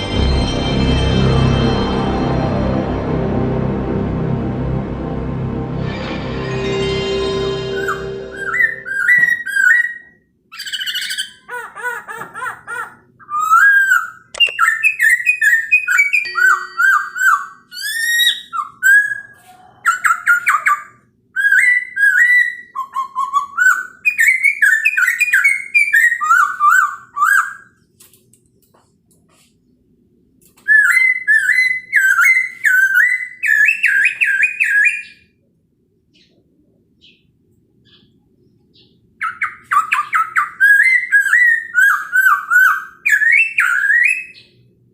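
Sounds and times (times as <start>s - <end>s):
bird singing whistled phrases: 7.8s - 11.4s, 13.3s - 20.8s, 30.7s - 35.2s, 39.2s - 44.6s.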